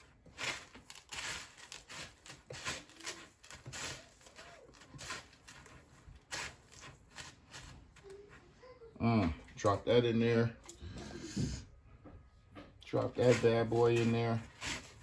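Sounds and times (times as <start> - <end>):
chicken rustling in crumb coating: 0.0 - 8.6, 12.9 - 15.0.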